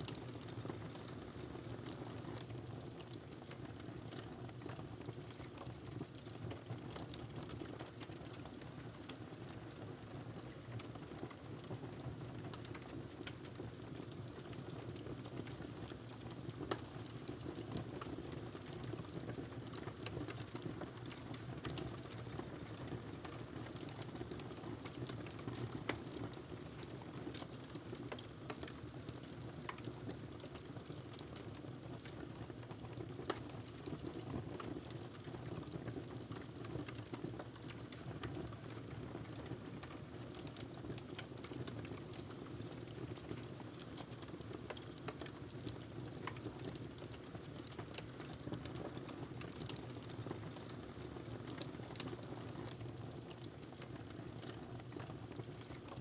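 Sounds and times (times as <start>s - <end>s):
wood fire crackling: 12.5s - 56.0s.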